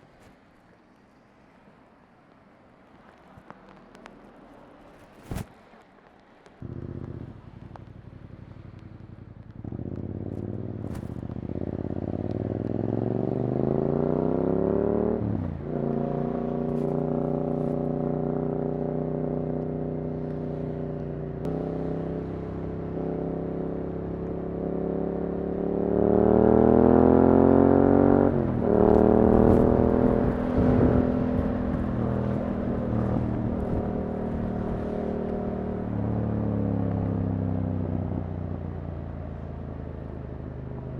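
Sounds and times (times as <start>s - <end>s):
exhaust crackles: 6.4s - 13.7s, 27.7s - 40.9s
motorcycle engine accelerating: 6.6s - 40.9s.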